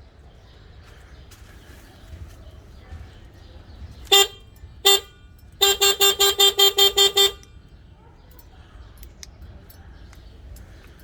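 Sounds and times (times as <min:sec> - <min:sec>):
electric bicycle horn beeps: 0:04.1 - 0:07.6.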